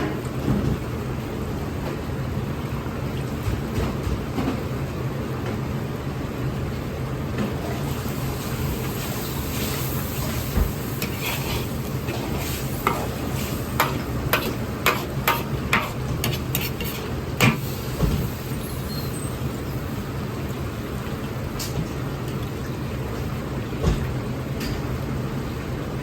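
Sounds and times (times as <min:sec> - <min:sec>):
gas burner roaring: 0:04.8 - 0:22.1
food sizzling in a wok: 0:07.8 - 0:20.2.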